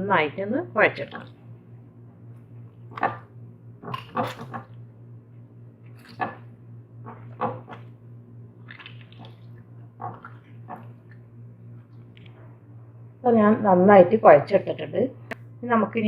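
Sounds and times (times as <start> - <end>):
dough squelching and slapping: 2.9 - 4.7, 5.8 - 12.3.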